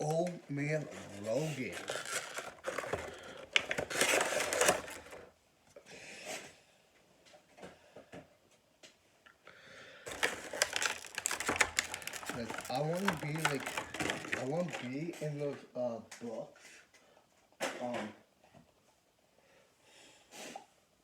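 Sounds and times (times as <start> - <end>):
cardboard packaging rustling: 0.0 - 5.3, 10.1 - 15.4.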